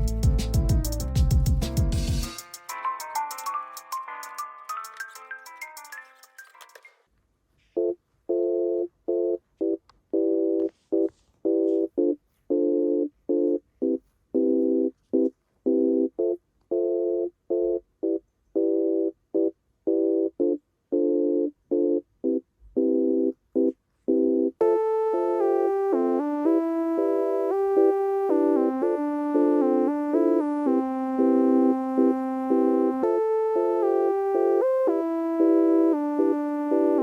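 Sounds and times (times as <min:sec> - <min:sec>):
synth music: 0:00.0 - 0:06.8, 0:24.1 - 0:37.0.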